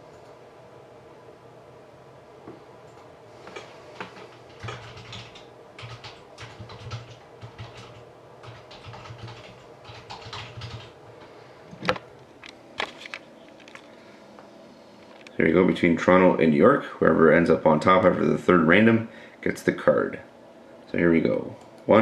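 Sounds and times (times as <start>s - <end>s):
typing on computer keyboard: 3.5s - 11.0s.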